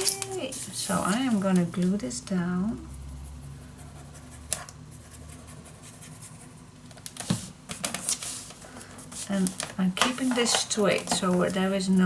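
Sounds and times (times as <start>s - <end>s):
paper scratching and handling: 0.0s - 2.0s, 5.8s - 11.8s.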